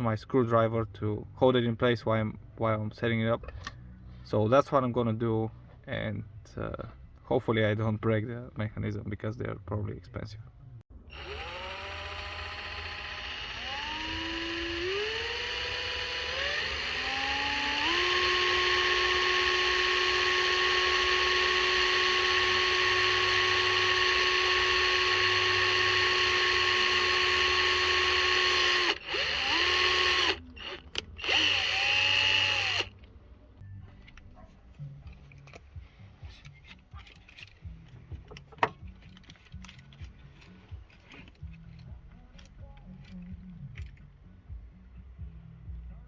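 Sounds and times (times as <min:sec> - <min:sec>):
power drill motor whine: 0:11.1 - 0:32.9.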